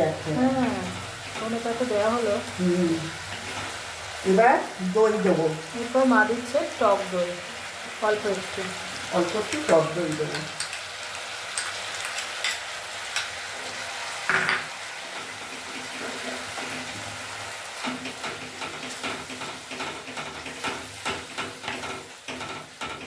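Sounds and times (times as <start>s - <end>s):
paste sizzling in oil: 0.0s - 23.0s
spatula scraping a pan: 10.6s - 23.0s.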